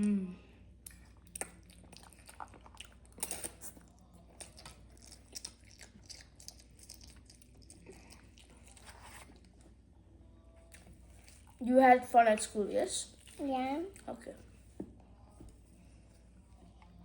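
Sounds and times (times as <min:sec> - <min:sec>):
people chewing and crunching: 0:00.0 - 0:09.8, 0:10.5 - 0:11.6, 0:13.0 - 0:14.4.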